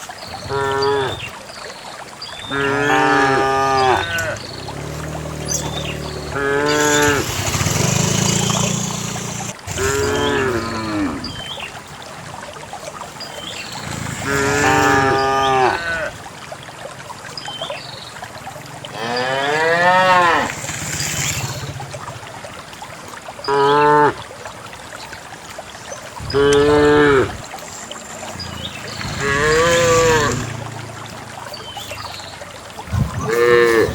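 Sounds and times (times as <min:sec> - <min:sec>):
cattle mooing: 0:02.5 - 0:07.3, 0:14.2 - 0:16.1, 0:28.4 - 0:31.0.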